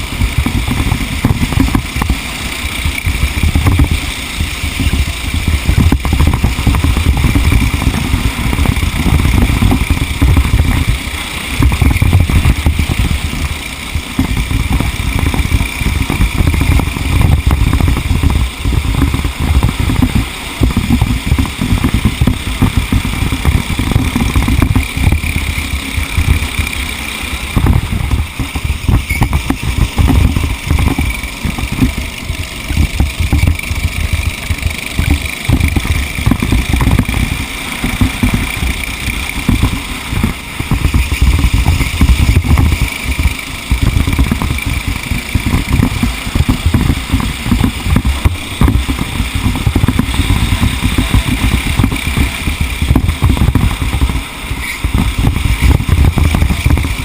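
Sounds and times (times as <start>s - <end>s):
racing vehicle engine running: 0.0s - 57.0s.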